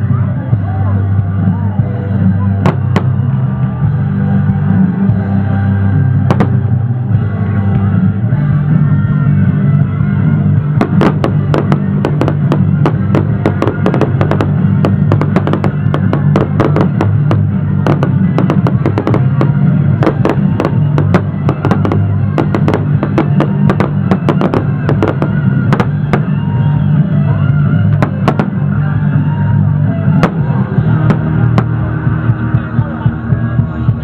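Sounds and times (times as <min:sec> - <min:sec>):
loud music: 0:00.0 - 0:34.0
fireworks bangs and crackles: 0:02.6 - 0:03.9, 0:06.2 - 0:07.2, 0:09.6 - 0:32.6.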